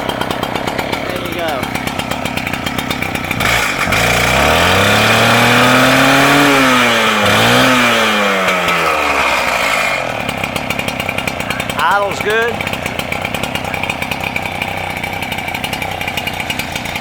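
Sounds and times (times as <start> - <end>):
cut-off saw revving: 0.0 - 17.0.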